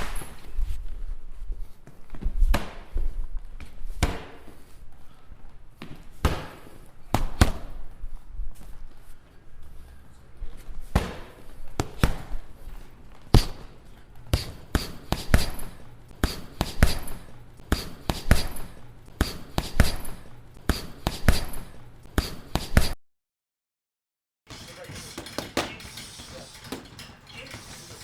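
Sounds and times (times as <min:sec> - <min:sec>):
boxing punches landing: 0:02.4 - 0:03.0, 0:03.6 - 0:04.5, 0:05.8 - 0:07.8, 0:10.8 - 0:12.4, 0:13.3 - 0:22.7.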